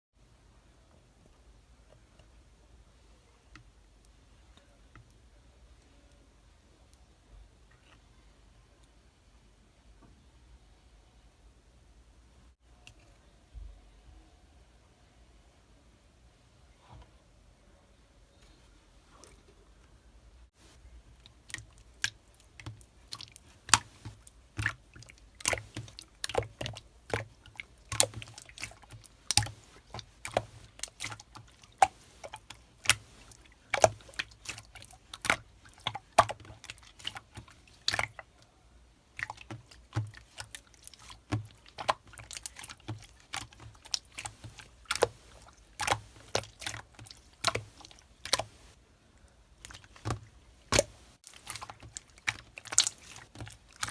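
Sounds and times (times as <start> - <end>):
slime squeezed wet pops: 39.2 - 48.6, 49.6 - 53.9.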